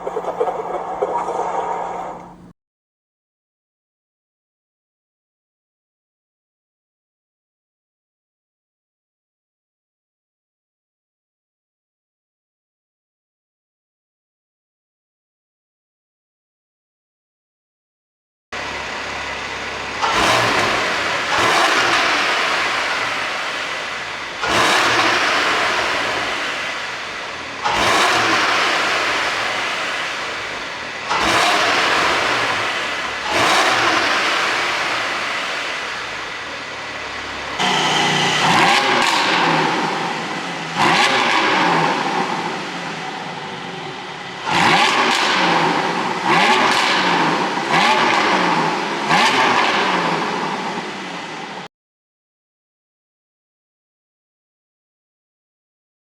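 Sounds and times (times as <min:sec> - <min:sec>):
car engine revving in throttle blips: 0:00.0 - 0:02.5, 0:18.6 - 0:51.4.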